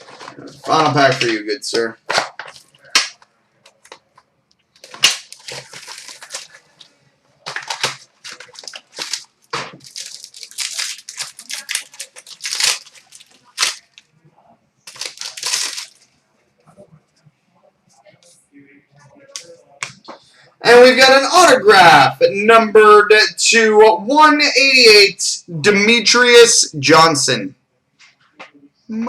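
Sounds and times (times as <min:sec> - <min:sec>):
wrapper tearing and crinkling: 0:02.1 - 0:04.0, 0:04.8 - 0:14.1, 0:14.8 - 0:16.1.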